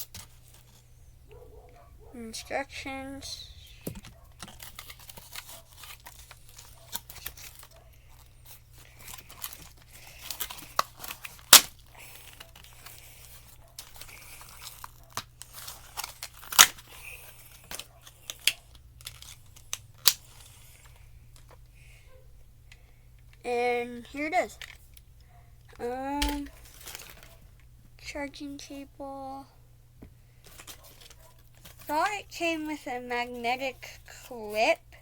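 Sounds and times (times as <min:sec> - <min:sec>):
paper and plastic rustling: 0:00.0 - 0:01.7, 0:02.8 - 0:21.6, 0:26.2 - 0:27.7, 0:30.3 - 0:34.8.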